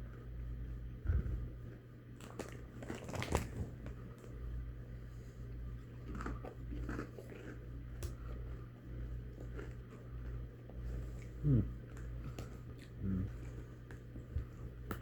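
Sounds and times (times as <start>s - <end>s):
steady low hum: 0.0s - 15.0s
crunching tortilla chip: 2.2s - 3.6s, 6.0s - 8.4s.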